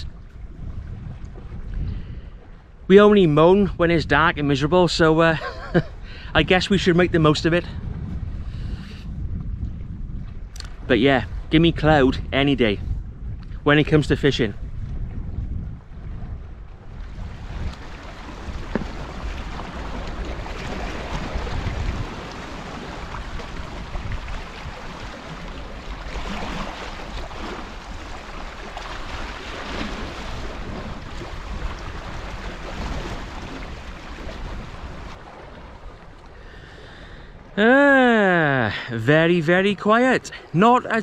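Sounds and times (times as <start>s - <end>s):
wind buffeting microphone: 0.0s - 37.6s
water washing against rocks: 17.5s - 35.2s.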